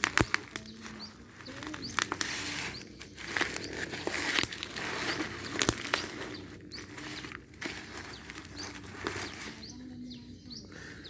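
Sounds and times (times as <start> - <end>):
bubble wrap clicks: 0.0 - 6.4
plastic packaging crinkling: 0.0 - 9.7.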